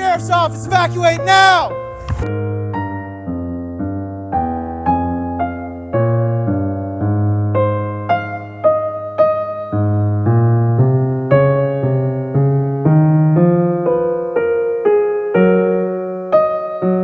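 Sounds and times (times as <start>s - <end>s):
held bass notes: 0.0s - 2.5s
slow piano line: 0.0s - 17.0s.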